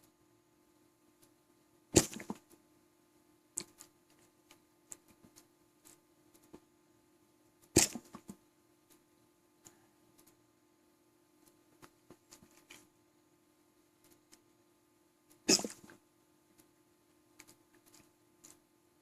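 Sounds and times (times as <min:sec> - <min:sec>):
person hiccuping: 0:15.5 - 0:15.8.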